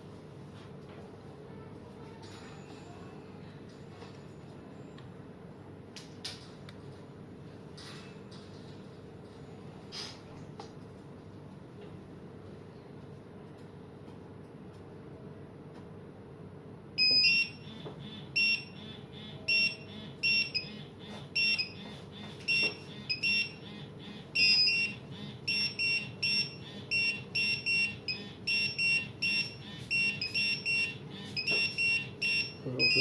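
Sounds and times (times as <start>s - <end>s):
pager high-pitched beeps: 17.0s - 23.7s, 24.4s - 33.0s.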